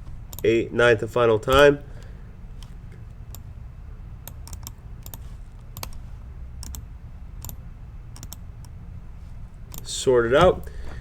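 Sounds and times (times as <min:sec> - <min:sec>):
low room hum: 0:00.0 - 0:11.0
computer clicks: 0:04.2 - 0:06.0, 0:06.6 - 0:06.8, 0:07.4 - 0:07.6, 0:08.2 - 0:08.8.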